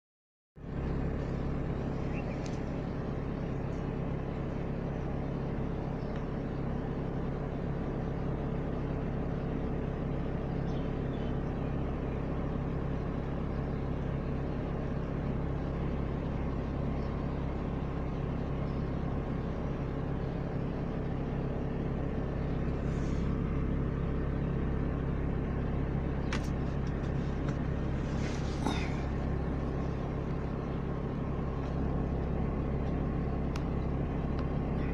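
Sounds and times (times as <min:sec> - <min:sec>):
low hum: 0:00.6 - 0:34.9.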